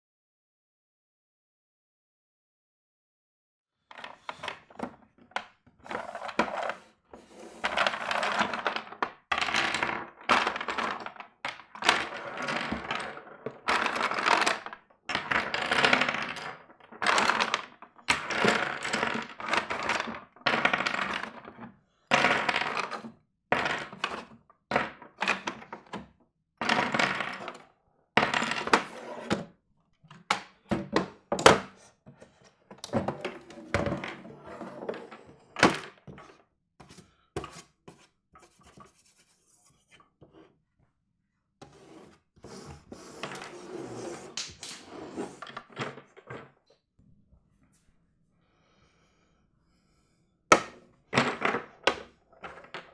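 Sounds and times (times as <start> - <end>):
chess pieces clacking on board: 7.4 - 21.6, 22.2 - 26.0, 42.5 - 45.5.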